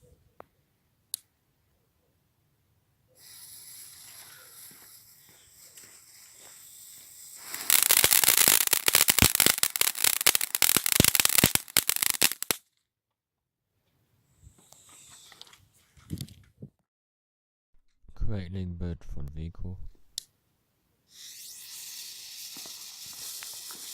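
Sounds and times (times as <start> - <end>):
firework crackling: 3.2 - 12.6, 21.1 - 23.9.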